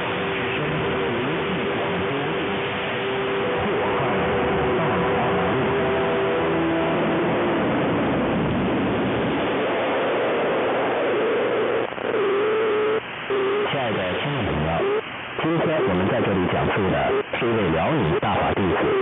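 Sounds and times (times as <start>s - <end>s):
radio static hiss: 0.0s - 19.0s.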